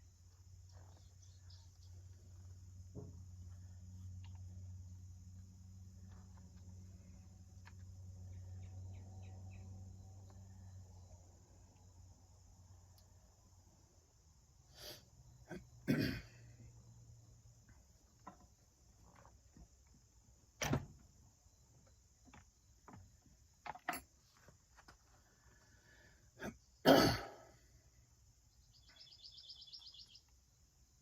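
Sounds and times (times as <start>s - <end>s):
insects chirring: 0.0s - 31.0s.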